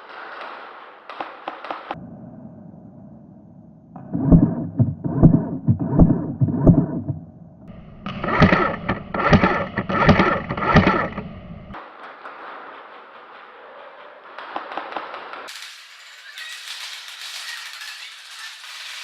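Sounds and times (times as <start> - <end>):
heavy footsteps walking: 4.0 - 11.7.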